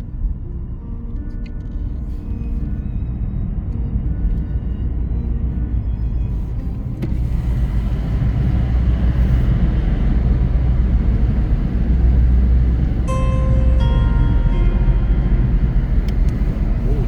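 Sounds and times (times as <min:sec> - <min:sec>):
vehicle rumble: 0:00.0 - 0:17.0
short multi-pitch tone: 0:13.1 - 0:17.0.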